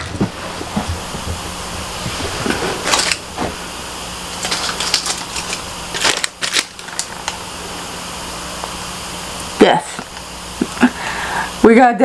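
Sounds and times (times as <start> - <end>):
low electrical hum: 0.0 - 12.0
packaging rustling and clicking: 2.0 - 3.6, 4.3 - 7.5.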